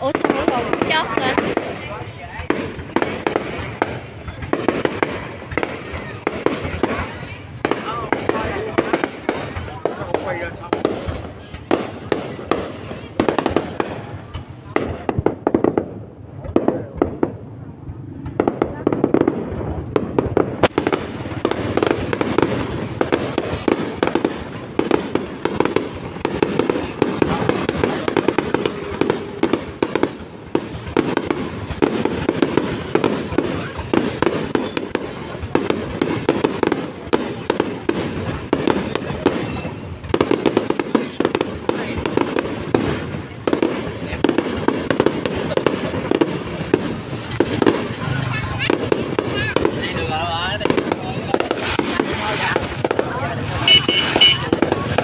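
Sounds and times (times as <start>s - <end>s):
fireworks popping and cracking: 0.0s - 55.0s.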